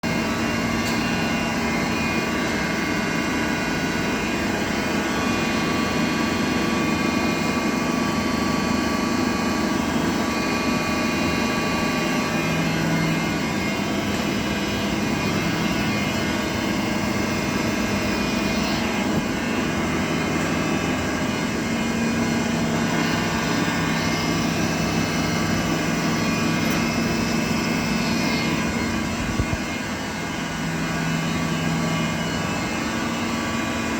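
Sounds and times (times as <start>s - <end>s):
grinding machine hum and whine: 0.0s - 33.9s.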